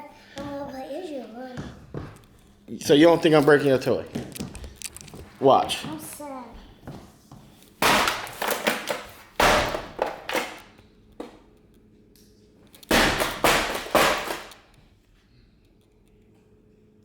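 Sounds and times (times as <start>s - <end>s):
shoes stomping on plastic toy: 1.5s - 11.4s, 12.8s - 14.6s
plastic crunching: 2.1s - 6.2s, 7.6s - 10.7s, 12.7s - 14.6s.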